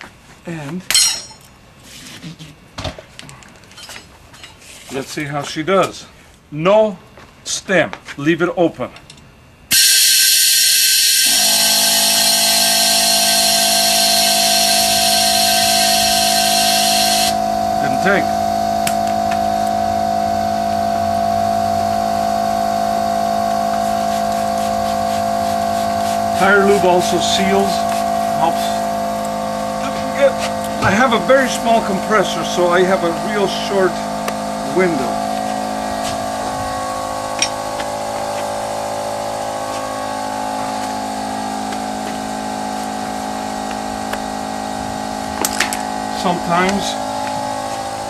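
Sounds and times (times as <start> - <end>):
air compressor humming: 9.4 - 48.0.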